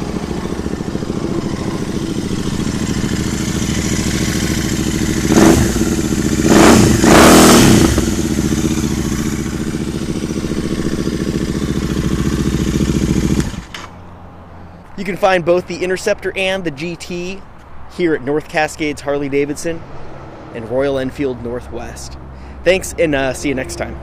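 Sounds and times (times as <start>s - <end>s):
motorcycle engine idling and revving: 0.0s - 14.8s.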